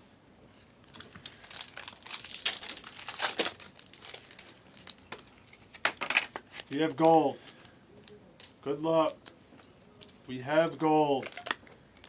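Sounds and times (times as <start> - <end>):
packaging crinkling and rustling: 0.8 - 7.6, 11.1 - 12.0.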